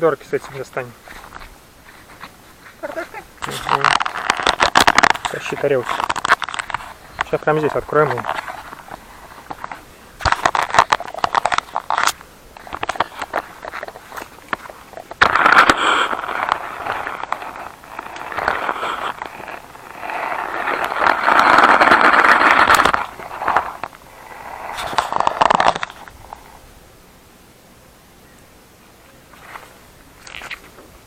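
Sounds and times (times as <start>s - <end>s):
packaging crinkling: 3.4s - 26.5s.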